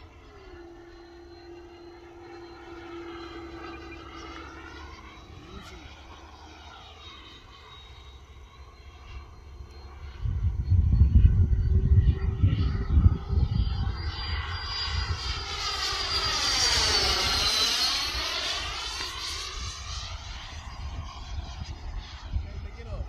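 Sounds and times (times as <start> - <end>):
model airplane motor whine: 0.0 - 23.0
wind buffeting microphone: 9.6 - 18.1, 19.1 - 23.0.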